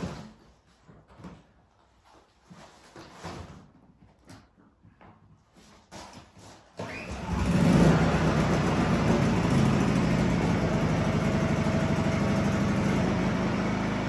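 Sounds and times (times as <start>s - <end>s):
generator engine running: 6.8s - 14.0s.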